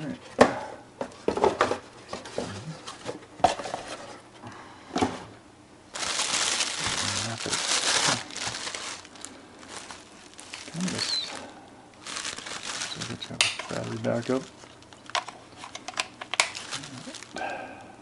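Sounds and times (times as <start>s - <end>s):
plastic packaging crinkling: 5.9s - 17.5s.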